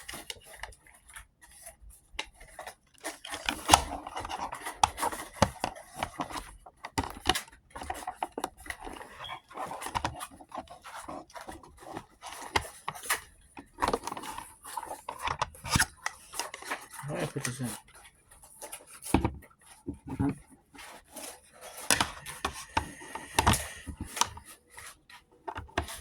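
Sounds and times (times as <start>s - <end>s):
plastic clicks and knocks: 3.3s - 10.6s, 19.0s - 20.5s, 21.8s - 24.5s, 25.5s - 26.0s.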